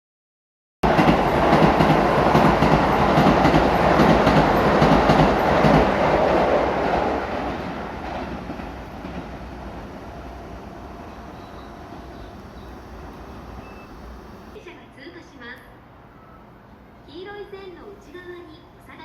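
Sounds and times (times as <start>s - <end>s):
train wheels clicking over rail joints: 0.9s - 10.4s.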